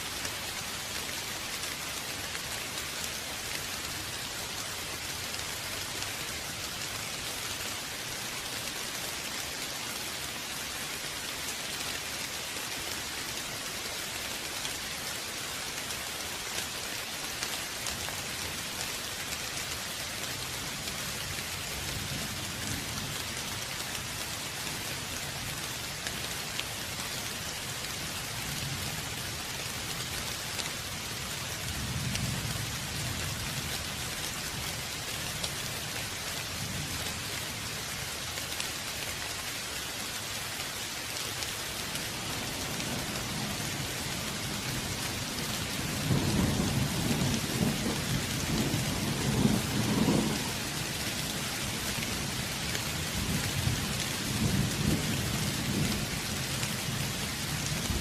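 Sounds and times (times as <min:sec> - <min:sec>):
heavy rain hissing: 0:00.0 - 0:58.0
thunder rumbling: 0:45.9 - 0:50.6.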